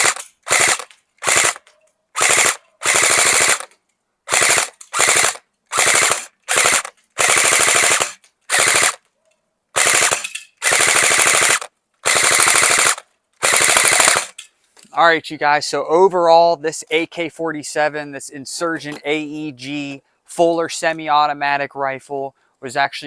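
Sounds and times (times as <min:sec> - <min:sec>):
airsoft rifle firing bursts: 0:00.0 - 0:03.7, 0:04.3 - 0:09.0, 0:09.8 - 0:14.4.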